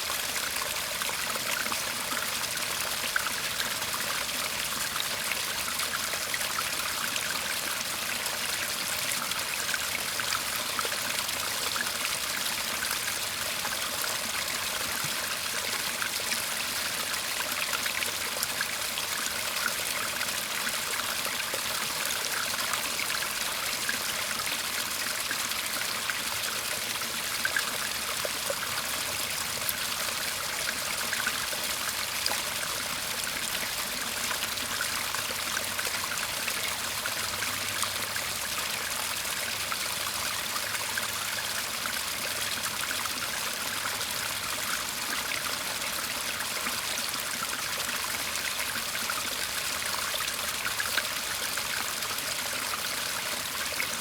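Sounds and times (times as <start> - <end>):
stream trickling over stones: 0.0 - 54.0.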